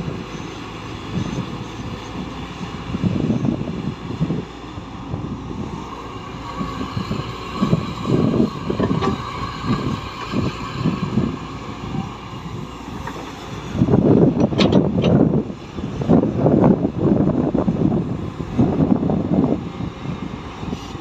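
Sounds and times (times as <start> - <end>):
diesel machinery engine running: 0.0 - 21.0.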